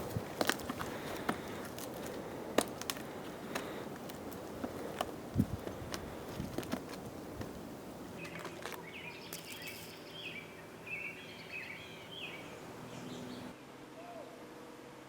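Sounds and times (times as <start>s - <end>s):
bird chirping: 8.2s - 13.6s.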